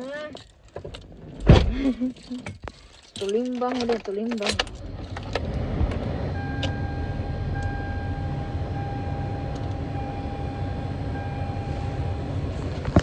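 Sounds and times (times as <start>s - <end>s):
car engine rumble: 0.0s - 13.0s
thin steady whine: 6.1s - 13.0s.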